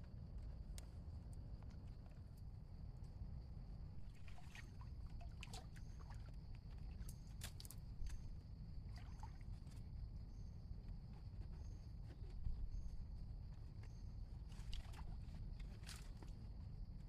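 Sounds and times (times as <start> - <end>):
water splashing and sloshing: 4.0 - 7.8.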